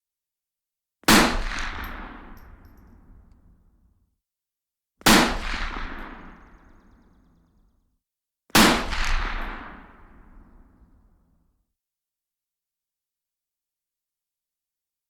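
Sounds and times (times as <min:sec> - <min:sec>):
rifle shots with echo: 0:01.1 - 0:03.3, 0:05.1 - 0:06.8.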